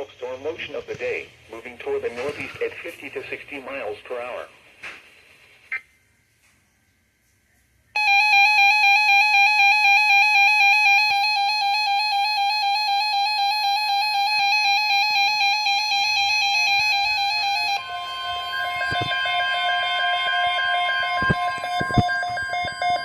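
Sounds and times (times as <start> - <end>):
two-tone alert tone: 8.0 - 23.0
faint warbling data tones: 16.0 - 23.0.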